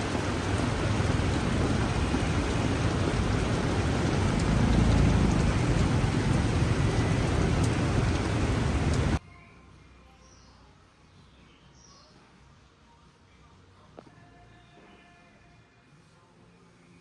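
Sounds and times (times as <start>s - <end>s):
low rumble: 0.0s - 9.2s
steady rain: 0.0s - 9.2s.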